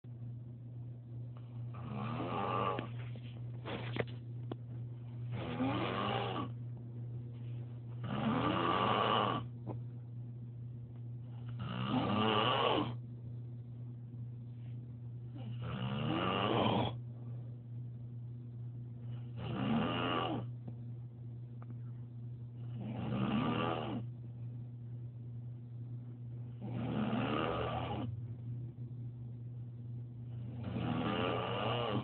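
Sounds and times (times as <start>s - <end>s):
man snoring: 1.7s - 3.0s, 5.3s - 6.6s, 8.0s - 9.5s, 11.4s - 13.0s, 15.4s - 17.0s, 19.1s - 20.5s, 22.6s - 24.1s, 26.5s - 28.1s, 30.3s - 32.0s.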